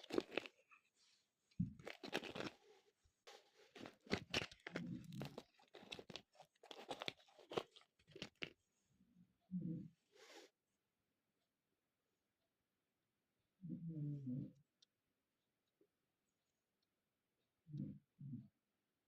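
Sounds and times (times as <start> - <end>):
packaging crinkling and tearing: 0.0 - 0.6, 1.8 - 2.7, 3.3 - 8.5.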